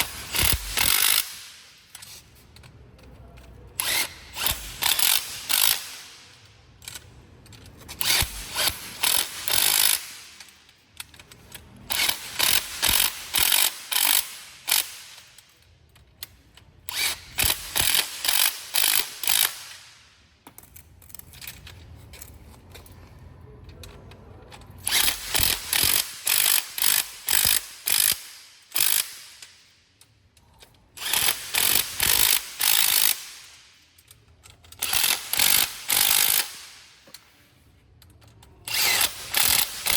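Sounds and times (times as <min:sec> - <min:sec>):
impact wrench hammering: 0:00.0 - 0:02.2, 0:03.8 - 0:06.3, 0:08.0 - 0:10.6, 0:11.9 - 0:15.6, 0:16.9 - 0:20.7, 0:24.8 - 0:29.7, 0:31.0 - 0:37.2, 0:38.7 - 0:39.9.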